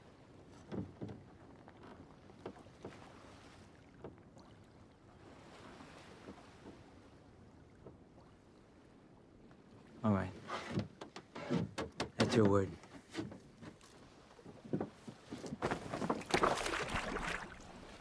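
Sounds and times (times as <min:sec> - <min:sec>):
soft wash of water: 0:00.0 - 0:10.0, 0:13.7 - 0:18.0
faint knocks of wood and gear: 0:00.5 - 0:03.0, 0:10.6 - 0:16.6.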